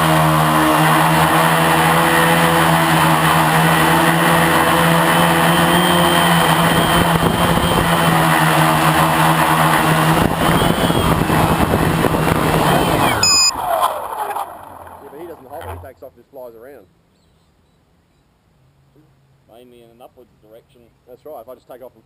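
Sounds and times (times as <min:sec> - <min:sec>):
quadcopter propellers humming: 0:00.0 - 0:15.9.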